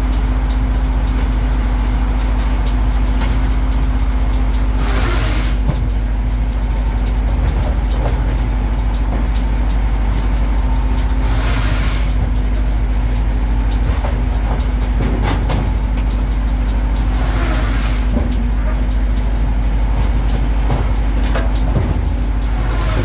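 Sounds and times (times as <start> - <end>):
firewood processor running: 0.0 - 23.0
wood knocking and clattering: 2.7 - 23.0
hissing surge: 17.0 - 18.8.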